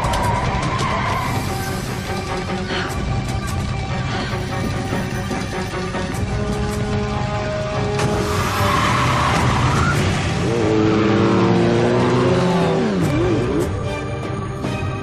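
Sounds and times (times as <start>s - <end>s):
car tyres skidding: 0.0s - 1.4s, 8.0s - 13.0s
background score music: 0.0s - 15.0s.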